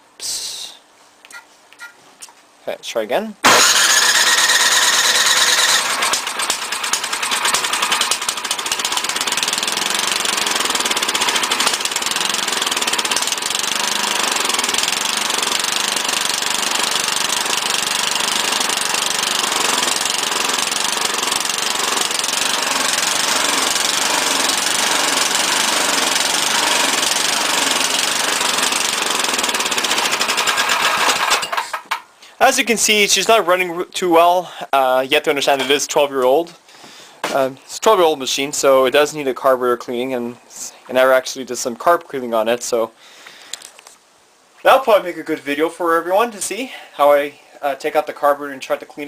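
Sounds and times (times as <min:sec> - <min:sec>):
snowblower engine running: 0:03.5 - 0:31.8.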